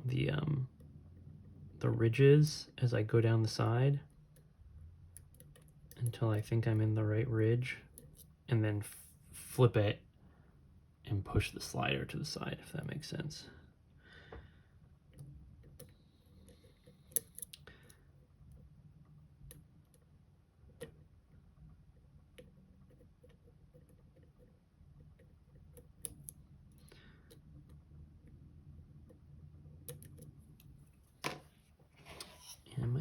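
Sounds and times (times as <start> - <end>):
lock pick clicking in a lock: 16.9 - 17.7.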